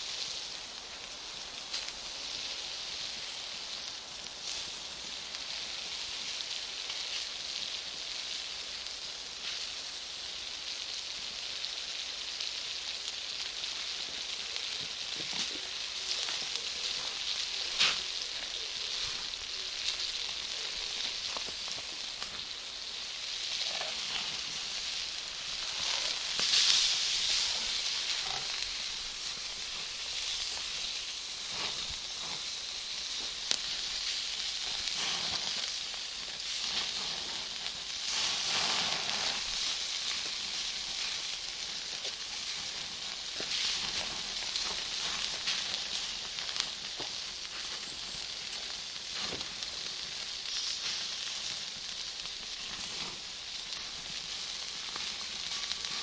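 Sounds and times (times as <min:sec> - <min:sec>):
charcoal fire hissing and crackling: 0:00.0 - 0:56.0
charcoal popping: 0:13.0 - 0:56.0.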